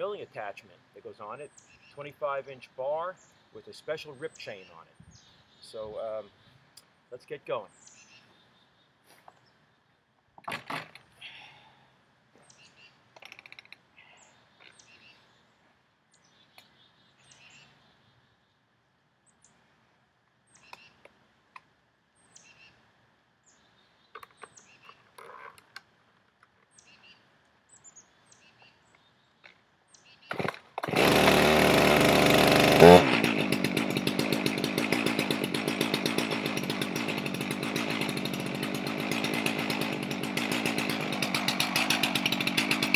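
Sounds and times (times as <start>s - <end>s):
chainsaw running and idling: 30.3s - 42.9s.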